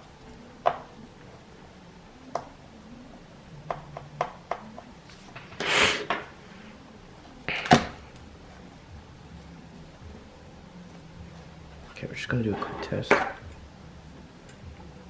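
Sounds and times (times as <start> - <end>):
tools clicking and tapping: 14.4 - 14.9.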